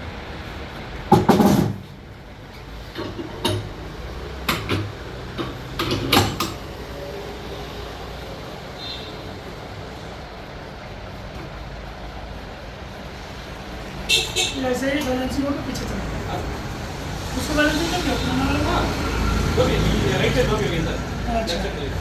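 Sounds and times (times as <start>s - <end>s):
knocks and clunks: 1.1s - 1.9s.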